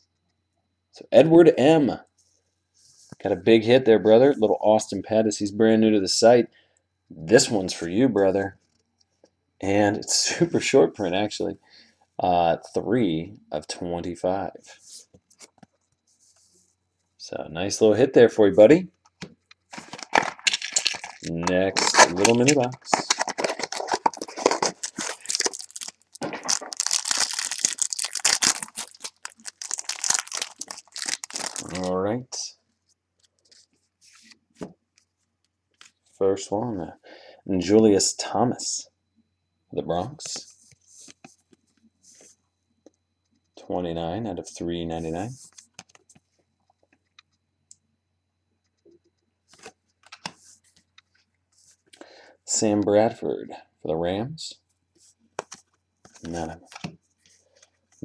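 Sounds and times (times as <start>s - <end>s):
trading cards shuffled and clicking: 19.0s - 31.9s, 55.4s - 57.0s
pack wrapper crinkling and tearing: 19.7s - 31.9s.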